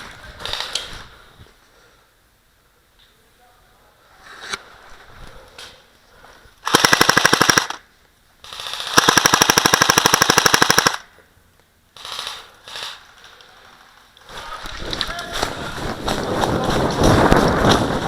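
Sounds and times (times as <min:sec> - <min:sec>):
airsoft gun full-auto bursts: 0:06.6 - 0:07.8, 0:08.4 - 0:11.1, 0:12.0 - 0:13.0.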